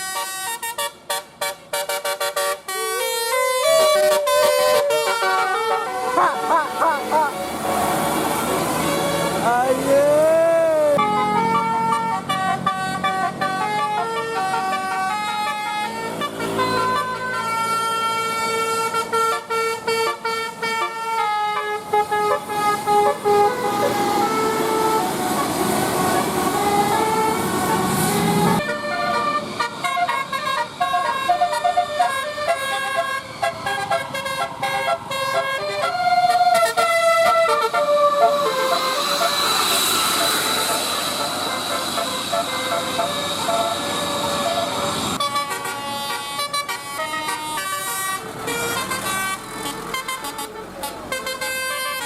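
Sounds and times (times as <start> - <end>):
musical air horn playing a tune: 0.0 - 52.0
hissing rush: 38.2 - 45.2.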